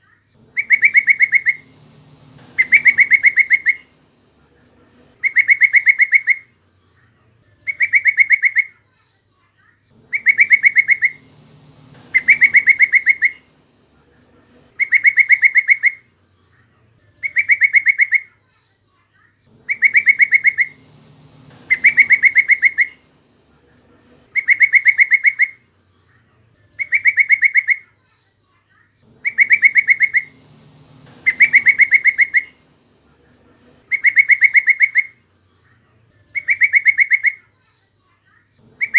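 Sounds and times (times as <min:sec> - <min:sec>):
bird chattering call: 0:00.4 - 0:06.6, 0:07.7 - 0:08.8, 0:10.0 - 0:16.1, 0:17.2 - 0:18.3, 0:19.5 - 0:25.7, 0:26.8 - 0:27.9, 0:29.1 - 0:35.2, 0:36.3 - 0:37.5, 0:38.6 - 0:38.9.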